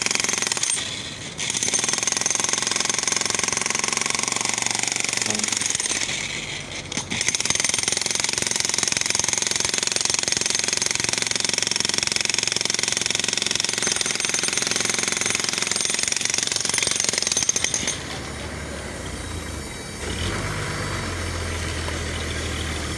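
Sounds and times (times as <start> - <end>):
jackhammer hammering: 0.0 - 20.4.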